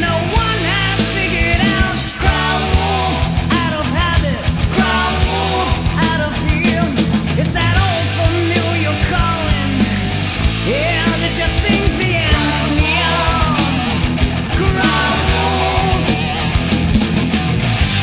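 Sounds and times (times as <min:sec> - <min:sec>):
lead vocal: 0:00.0 - 0:17.2
rock band playing: 0:00.0 - 0:18.0.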